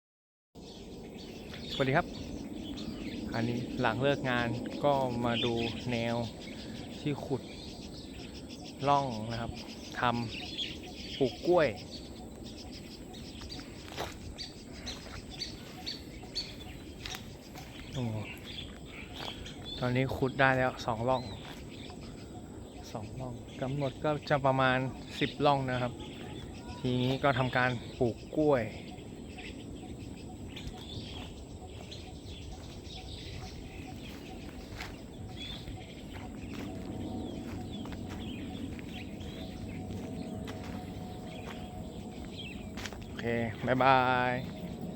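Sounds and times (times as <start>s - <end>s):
bird chirping: 0.6s - 44.9s
low background rumble: 24.9s - 44.9s.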